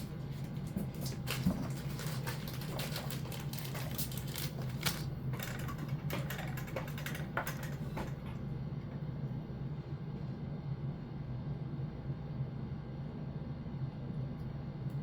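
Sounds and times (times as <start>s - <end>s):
steady low hum: 0.0s - 15.0s
small parts clicking and rattling: 1.3s - 8.2s.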